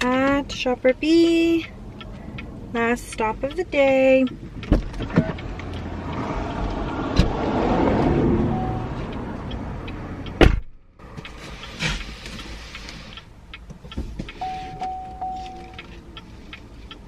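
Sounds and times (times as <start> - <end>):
light regular ticking: 0.0 - 7.2, 8.0 - 17.0
car cabin driving noise: 0.0 - 17.0
electronic chime beeps: 8.5 - 8.9, 14.4 - 15.8.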